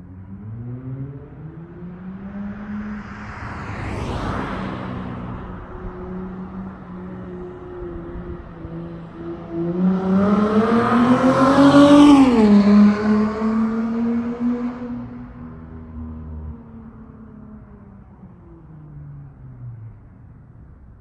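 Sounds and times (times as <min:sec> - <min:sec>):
car exhaust passing by: 0:00.3 - 0:17.0.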